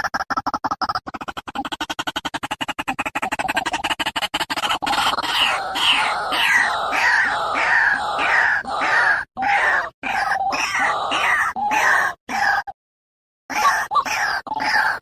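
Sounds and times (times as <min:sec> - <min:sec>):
waterhen croaking calls: 0:04.5 - 0:12.7.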